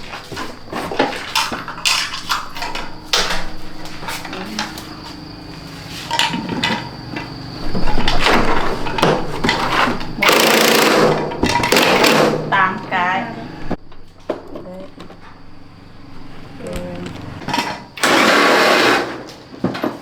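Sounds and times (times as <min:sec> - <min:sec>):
metal tools clinking: 0:00.0 - 0:05.2
metal scraping and rattling: 0:00.0 - 0:12.3.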